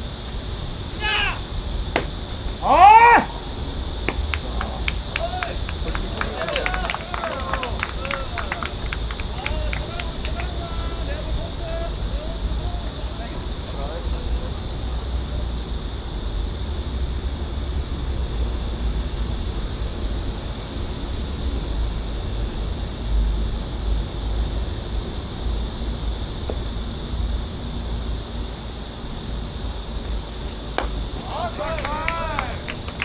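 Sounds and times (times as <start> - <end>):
insects chirping: 0.0 - 16.7, 25.3 - 33.0
continuous low rumble: 0.0 - 33.0.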